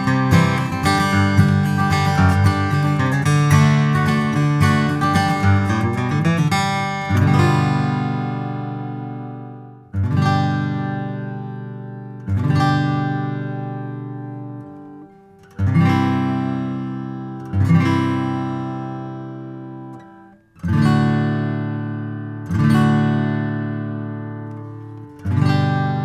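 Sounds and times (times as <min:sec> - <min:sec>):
acoustic guitar strummed chords: 0:00.0 - 0:26.0.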